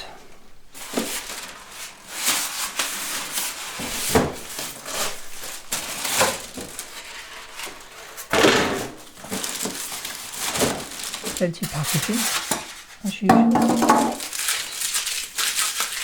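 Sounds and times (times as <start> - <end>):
packaging rustling and scraping: 0.7 - 16.0.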